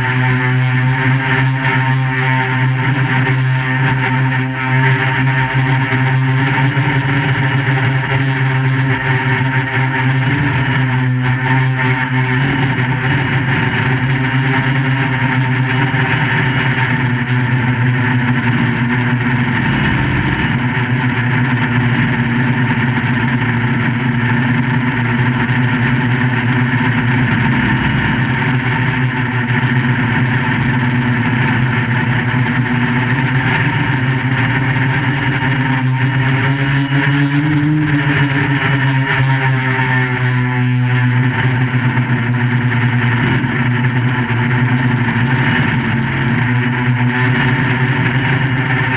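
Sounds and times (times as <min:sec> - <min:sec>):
quadcopter motors and propellers: 0:00.0 - 0:48.9.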